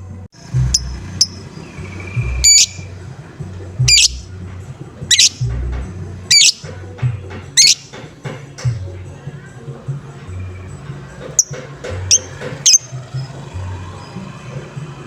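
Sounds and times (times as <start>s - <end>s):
lovebird squawking: 0.6s - 3.0s, 3.8s - 4.3s, 5.1s - 5.7s, 6.3s - 6.8s, 7.5s - 8.0s, 11.4s - 13.4s.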